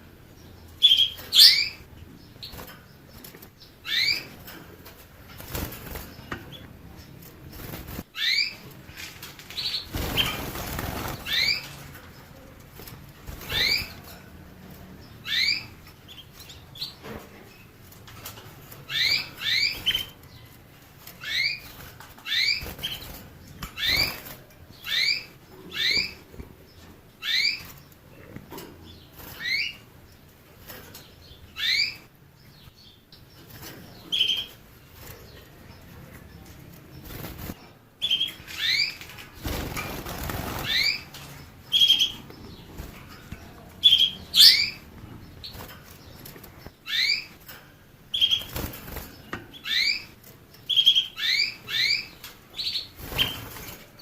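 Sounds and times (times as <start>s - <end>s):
rustling noise: 2.3s - 15.1s, 15.7s - 50.7s.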